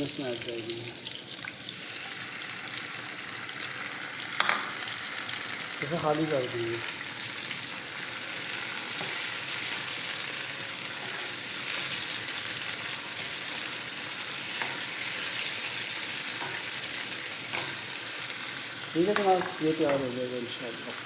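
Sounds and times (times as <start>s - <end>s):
curry sizzling in a hot pan: 0.0s - 21.0s.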